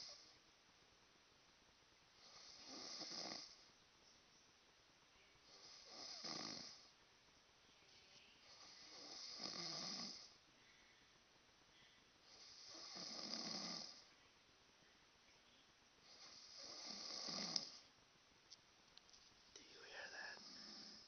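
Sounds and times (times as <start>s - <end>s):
man snoring: 2.2s - 3.6s, 5.6s - 6.9s, 8.5s - 10.4s, 12.3s - 14.1s, 16.1s - 17.8s, 19.8s - 21.0s.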